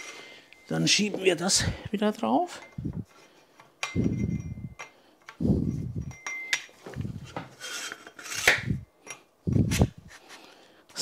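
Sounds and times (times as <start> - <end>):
metal parts knocking and clinking: 2.5 - 9.3.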